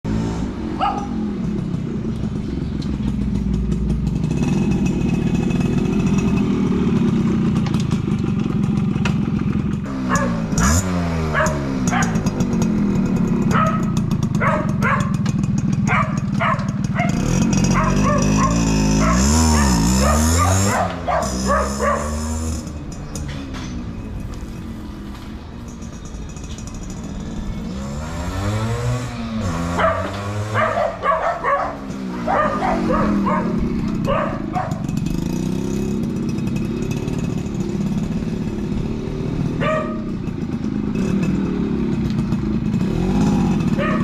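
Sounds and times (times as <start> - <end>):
motorcycle engine idling and revving: 0.0 - 44.0
dog barking: 0.8 - 1.2, 10.1 - 12.3, 13.5 - 15.2, 15.9 - 22.3, 29.7 - 34.9, 39.6 - 40.1, 43.8 - 44.0.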